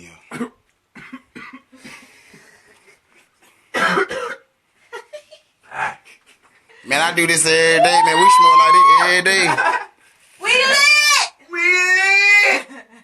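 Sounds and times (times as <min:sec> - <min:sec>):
man coughing harshly: 0:00.3 - 0:02.0, 0:03.7 - 0:04.5.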